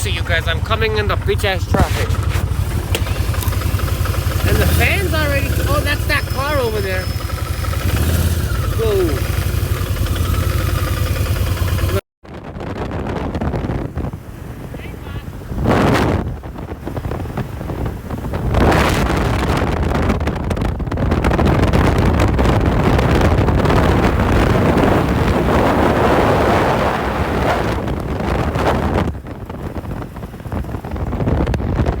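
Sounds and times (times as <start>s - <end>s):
motorcycle engine: 0.0s - 12.0s, 20.9s - 32.0s
road noise: 0.0s - 12.0s, 13.1s - 18.9s
wind buffeting microphone: 0.0s - 32.0s.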